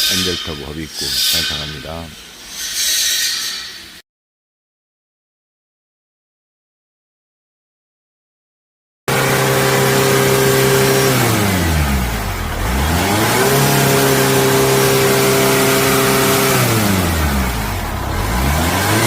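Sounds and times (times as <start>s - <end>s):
diesel engine revving: 9.1s - 19.0s.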